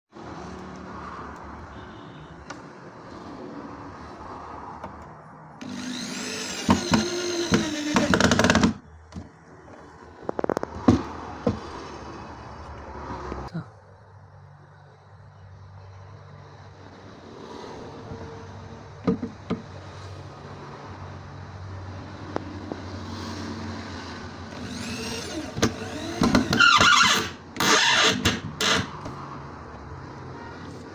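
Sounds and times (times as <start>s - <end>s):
workshop noise: 2.4s - 12.0s, 24.5s - 30.9s
power tool motor running: 5.6s - 8.8s, 24.5s - 28.9s.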